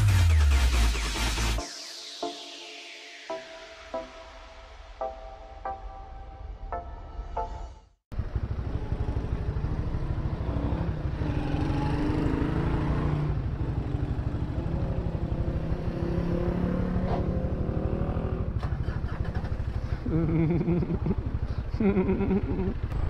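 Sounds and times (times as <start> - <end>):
motorcycle engine running: 8.1 - 15.8, 16.4 - 23.0.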